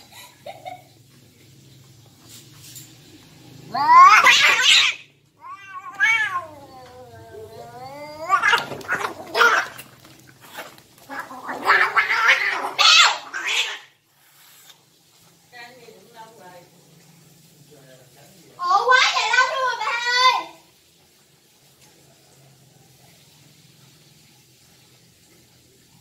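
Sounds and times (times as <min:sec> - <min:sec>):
cats yowling and screeching: 0:03.6 - 0:10.1, 0:11.0 - 0:14.0.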